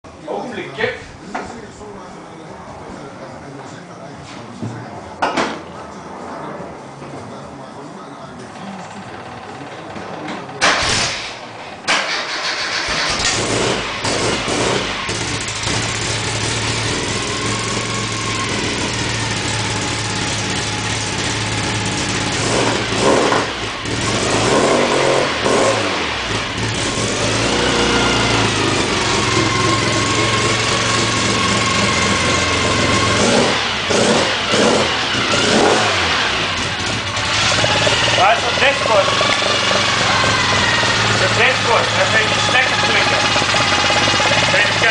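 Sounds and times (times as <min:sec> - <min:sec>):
car engine starting and revving: 0:10.4 - 0:44.9.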